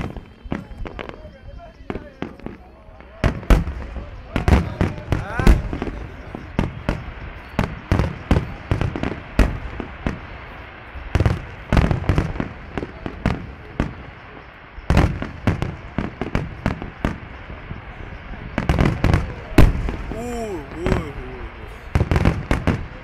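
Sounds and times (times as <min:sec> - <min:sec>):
fireworks bangs and cracks: 0:00.0 - 0:23.0.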